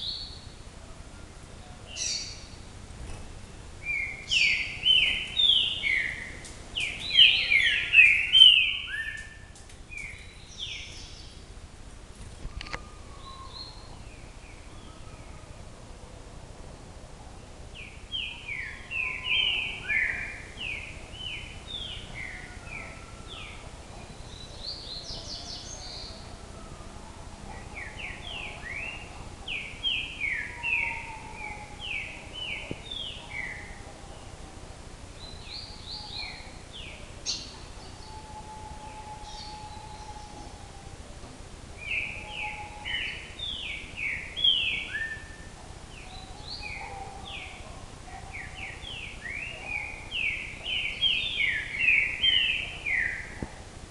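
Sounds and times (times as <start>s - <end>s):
songbird singing: 0.0s - 53.9s
steady background hiss: 0.0s - 53.9s.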